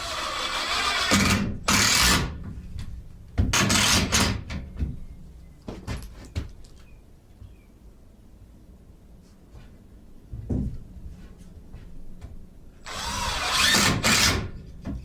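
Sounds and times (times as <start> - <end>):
screw gun driving screws: 0.0 - 2.3, 12.8 - 14.5.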